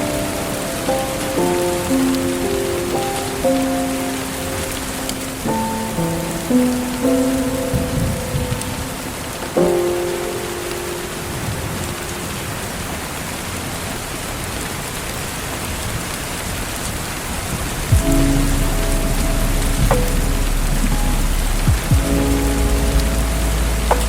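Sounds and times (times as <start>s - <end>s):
lofi keyboard music: 0.0s - 13.1s, 17.9s - 24.0s
steady rain hissing: 0.0s - 24.0s.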